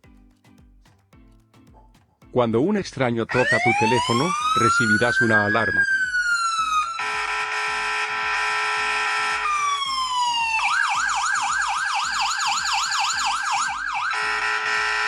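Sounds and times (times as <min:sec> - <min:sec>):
phone alarm siren: 0:03.3 - 0:15.0.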